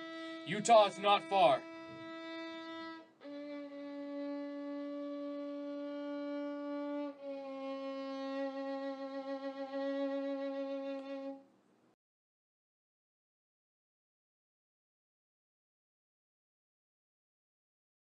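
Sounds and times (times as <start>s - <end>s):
bowed string instrument held notes: 0.0s - 11.4s.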